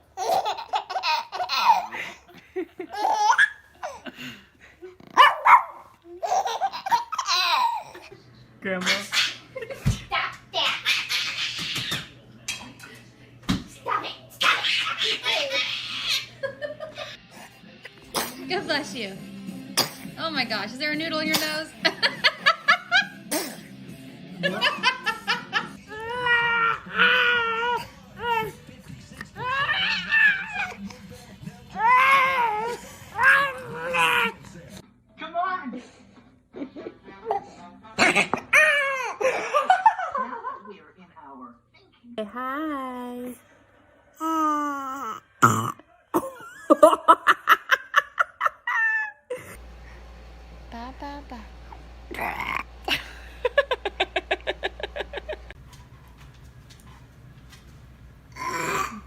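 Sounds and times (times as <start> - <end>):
baby laughing: 0.1 - 2.2, 2.8 - 4.1, 6.1 - 8.1, 10.6 - 12.1, 14.4 - 16.5
high-pitched laughter: 14.4 - 17.1, 46.2 - 49.5.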